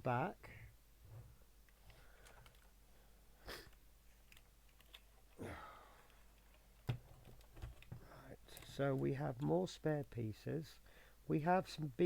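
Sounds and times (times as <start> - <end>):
plastic parts clicking: 1.7 - 2.7, 3.7 - 5.4, 6.0 - 9.5.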